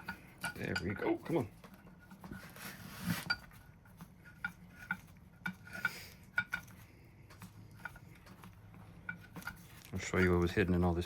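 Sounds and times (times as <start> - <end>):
metal tool scraping: 0.0 - 7.0.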